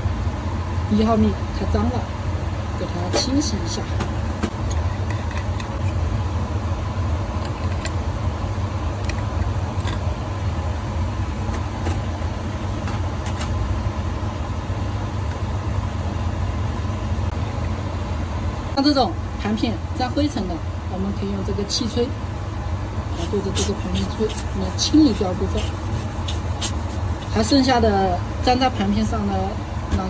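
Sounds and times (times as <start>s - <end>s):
fan blower humming: 0.0s - 30.0s.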